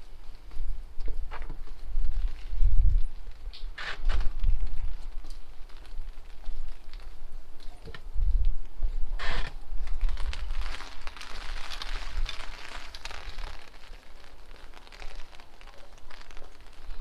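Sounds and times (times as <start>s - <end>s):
rain patter: 0.0s - 17.0s
wind buffeting microphone: 0.6s - 13.9s.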